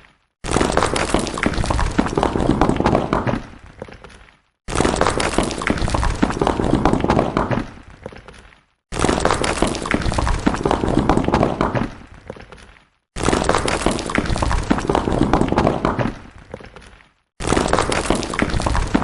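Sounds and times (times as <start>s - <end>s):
stones falling and clattering: 0.0s - 19.0s.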